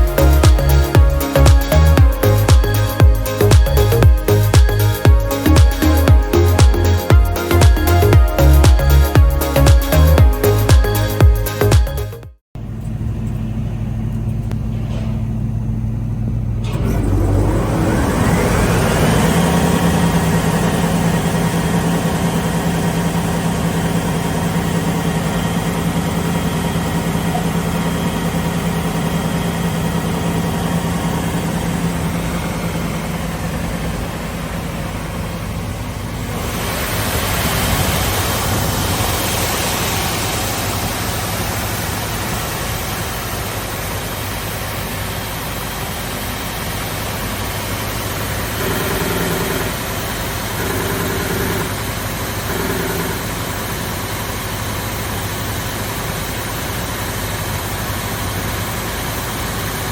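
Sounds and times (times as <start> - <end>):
sander motor humming: 0.0 - 12.0.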